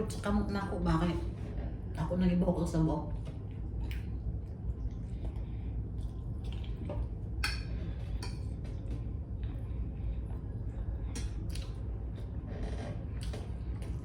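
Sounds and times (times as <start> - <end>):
steady low hum: 0.0 - 14.0
eating clicks and smacks: 4.8 - 7.1, 11.1 - 12.3, 13.1 - 14.0.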